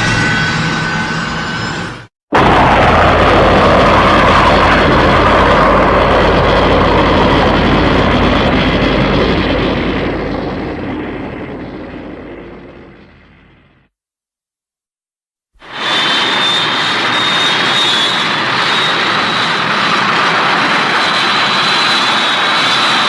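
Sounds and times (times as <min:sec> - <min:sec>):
jet thruster rush: 0:00.0 - 0:13.9, 0:15.6 - 0:23.0
low hum: 0:00.0 - 0:13.9.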